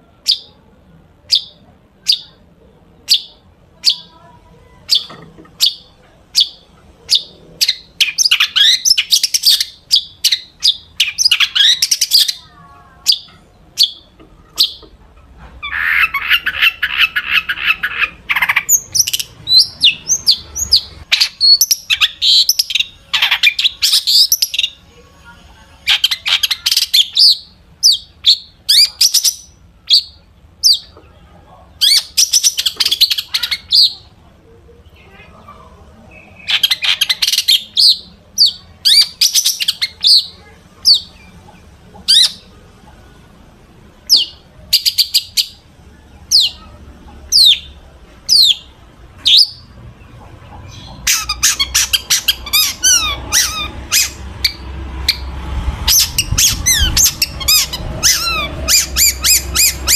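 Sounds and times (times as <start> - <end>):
sharp bird calls: 0.0 - 0.6, 1.2 - 2.4, 3.0 - 14.9, 15.6 - 24.9, 31.8 - 34.1, 46.2 - 59.9
shrike singing: 50.7 - 59.9
harsh rasping bird call: 51.0 - 54.6.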